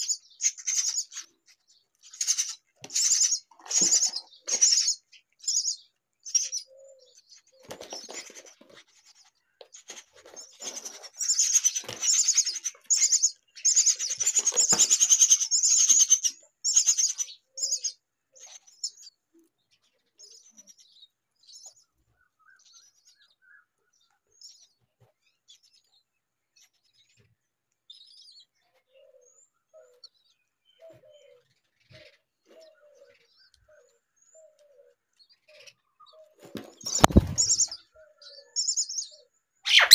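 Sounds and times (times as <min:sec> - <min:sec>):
bird chicks calling: 0:00.0 - 0:19.1, 0:27.9 - 0:39.9.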